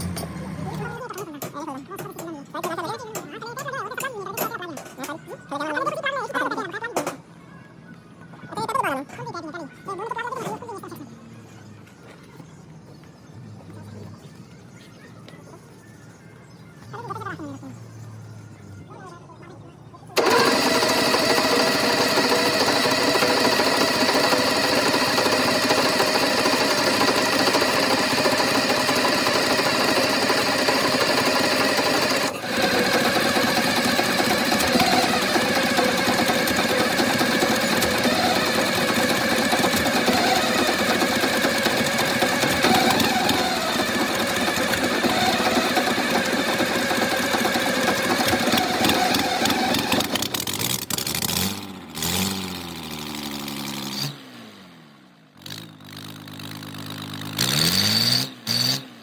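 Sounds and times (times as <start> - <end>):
diesel engine clattering: 0.0 - 5.6, 20.2 - 54.7.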